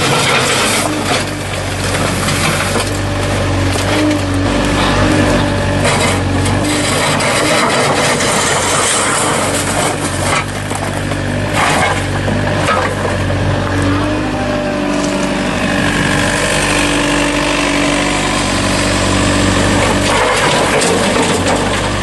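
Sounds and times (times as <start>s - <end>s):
harsh rough scraping: 0.0s - 22.0s
heavy machinery engine running: 0.0s - 22.0s.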